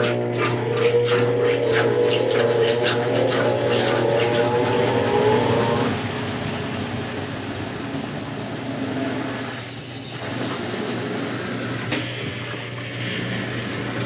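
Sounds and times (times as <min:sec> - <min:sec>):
falling whine: 0:00.0 - 0:09.6
washing machine running: 0:00.0 - 0:14.0.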